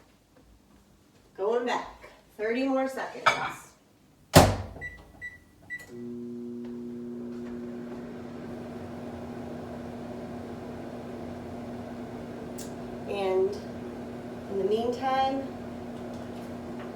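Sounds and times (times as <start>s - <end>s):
microwave humming: 5.7s - 16.9s.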